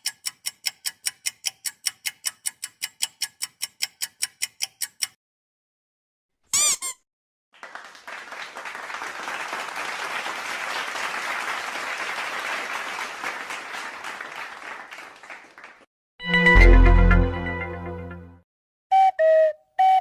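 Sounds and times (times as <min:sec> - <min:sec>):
crowd applause: 0:07.6 - 0:15.9.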